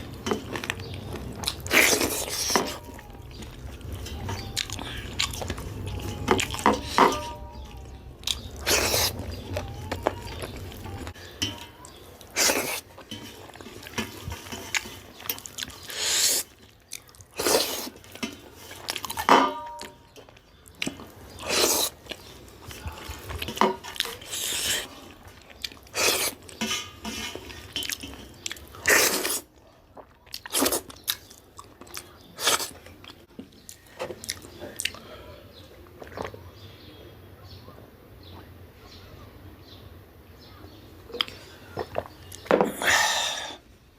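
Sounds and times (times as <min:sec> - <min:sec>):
dishes and cutlery clinking: 0:00.0 - 0:01.0, 0:01.9 - 0:07.9, 0:09.4 - 0:12.1, 0:13.0 - 0:15.9, 0:18.0 - 0:21.1, 0:23.0 - 0:24.3, 0:26.5 - 0:28.8
person chewing and smacking: 0:00.0 - 0:26.6, 0:27.4 - 0:35.0, 0:35.7 - 0:36.4, 0:41.1 - 0:42.9.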